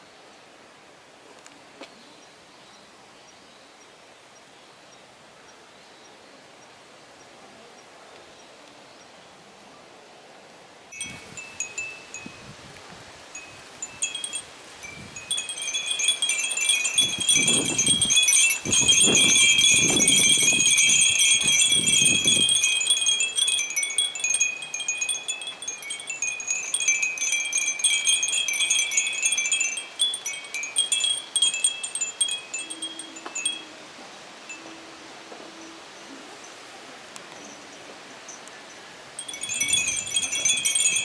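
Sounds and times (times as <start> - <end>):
wind chimes jingling: 10.9 - 12.7, 13.3 - 33.7, 39.2 - 41.0
low wind rumble on microphone: 11.0 - 32.0, 39.3 - 41.0.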